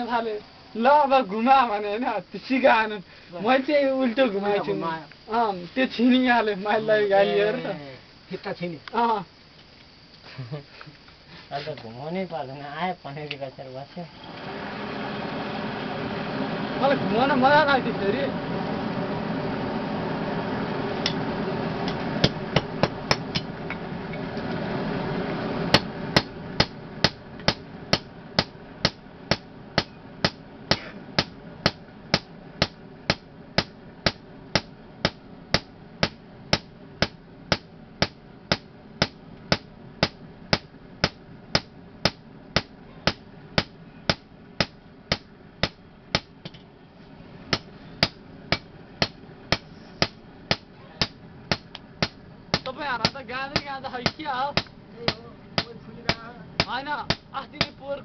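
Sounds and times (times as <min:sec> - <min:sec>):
steady rumble: 0:14.4 - 0:58.0.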